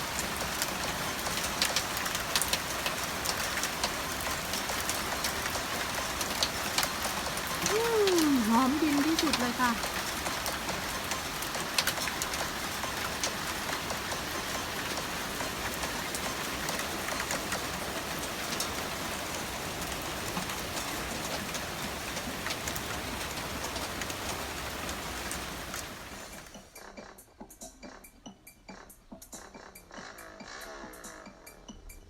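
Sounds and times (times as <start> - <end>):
raindrops ticking on surfaces: 0.0 - 26.8
steady rain hiss: 0.0 - 26.8.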